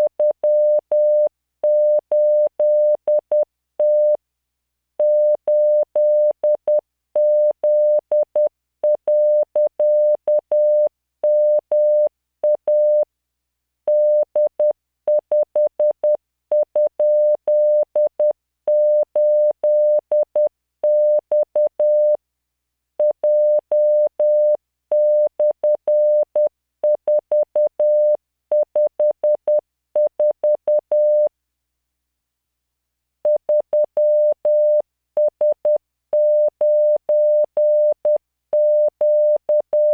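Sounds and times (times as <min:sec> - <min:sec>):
morse code tone: 0:33.3 - 0:39.9.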